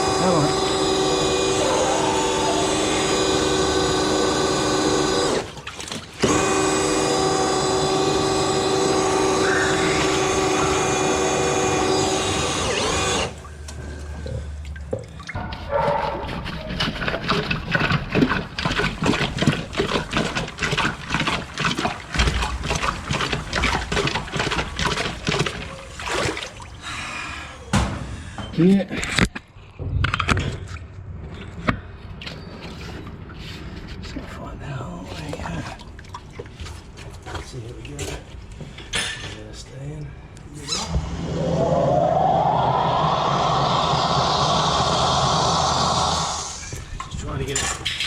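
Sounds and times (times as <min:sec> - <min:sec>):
drain-cleaning machine hum: 0:00.0 - 0:14.7, 0:16.9 - 0:27.4, 0:40.5 - 0:47.4.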